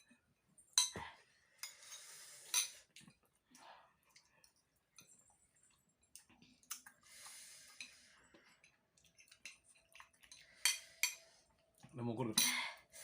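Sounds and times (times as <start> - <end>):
cutlery clinking on a plate: 0.7 - 2.8.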